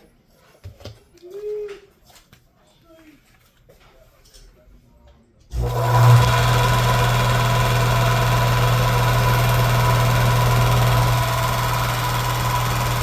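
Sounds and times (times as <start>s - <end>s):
electric power tool running: 5.5s - 13.0s.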